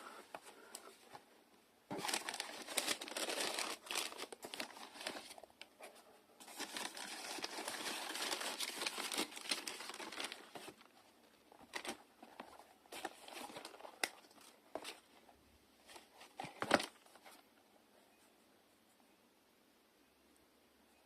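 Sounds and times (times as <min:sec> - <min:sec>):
packaging crinkling and rustling: 0:01.9 - 0:05.8, 0:06.4 - 0:15.1, 0:15.8 - 0:17.4.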